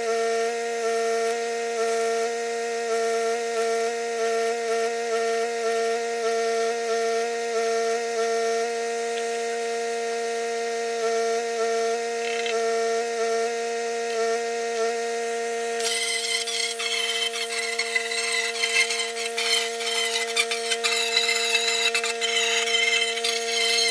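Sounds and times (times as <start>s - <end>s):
angle grinder whine: 0.0s - 23.9s
grinder disc rasping on steel: 15.8s - 23.9s.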